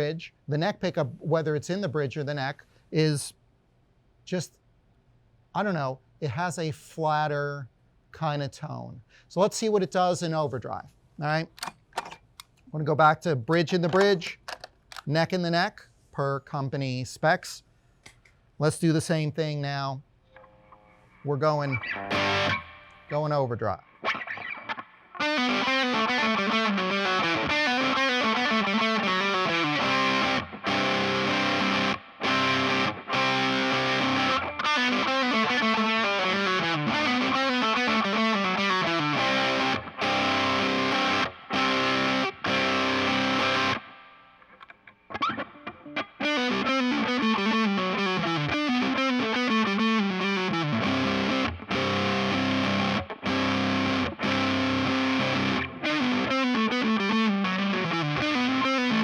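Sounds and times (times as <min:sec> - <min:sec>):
overdriven electric guitar runs: 0:25.2 - 0:43.8, 0:45.2 - 0:59.0.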